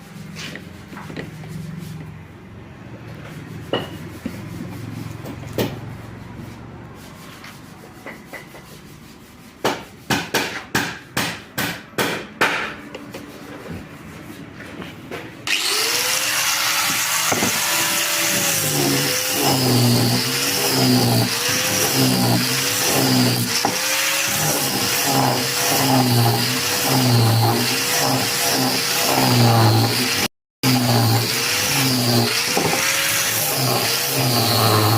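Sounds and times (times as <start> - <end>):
angle grinder running: 15.4 - 34.9.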